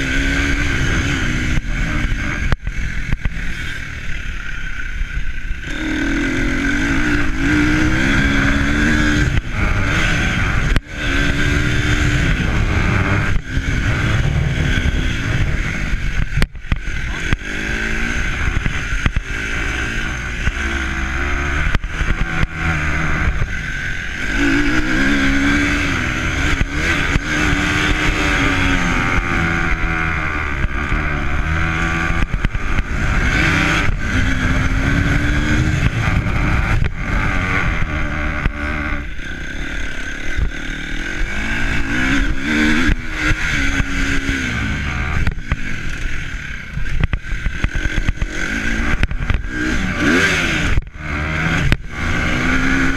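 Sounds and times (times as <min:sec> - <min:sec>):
wind noise on microphone: 0:05.0 - 0:39.2
vehicle engine accelerating: 0:05.6 - 0:52.9.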